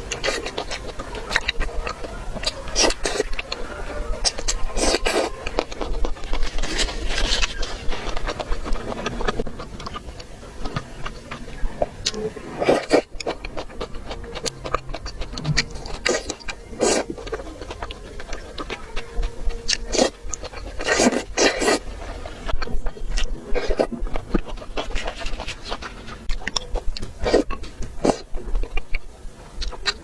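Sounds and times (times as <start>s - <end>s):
chewing and crunching food: 0.0s - 30.0s.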